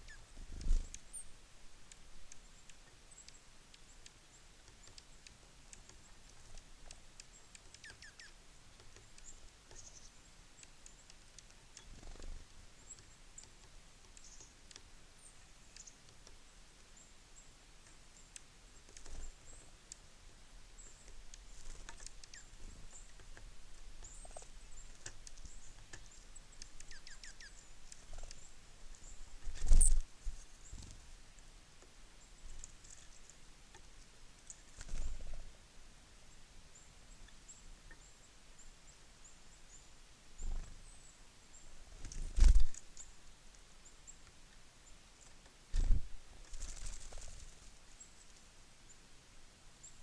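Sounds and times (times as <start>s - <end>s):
songbirds chirping: 0.0s - 50.0s.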